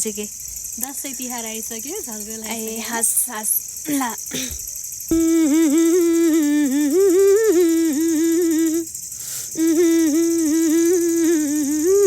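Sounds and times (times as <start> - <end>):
woman singing unaccompanied: 5.1 - 8.9, 9.5 - 12.0.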